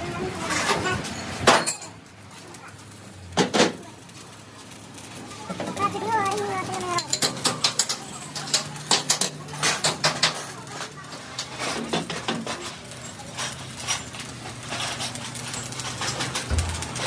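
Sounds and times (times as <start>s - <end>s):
metal tools clinking: 1.0s - 2.0s.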